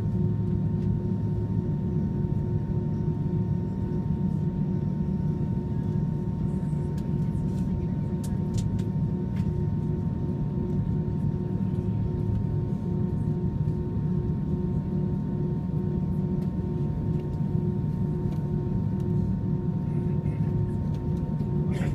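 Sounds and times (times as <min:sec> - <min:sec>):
constant hum: 0:00.0 - 0:21.9
low machinery drone: 0:00.0 - 0:21.9.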